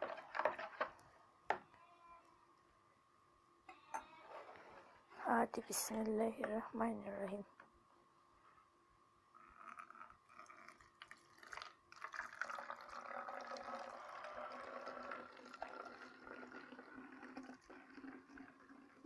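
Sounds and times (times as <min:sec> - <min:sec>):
liquid trickling into bottle: 0:09.6 - 0:19.0.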